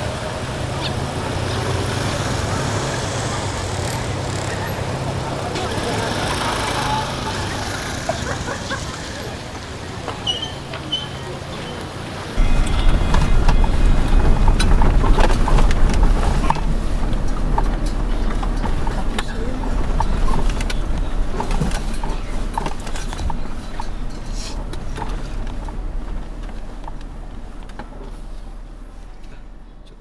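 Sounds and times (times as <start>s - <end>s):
wind buffeting microphone: 12.4s - 27.6s.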